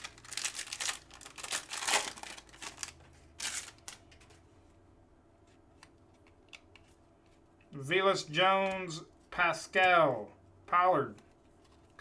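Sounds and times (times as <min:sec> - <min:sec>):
trading cards rustling: 0:00.0 - 0:04.4.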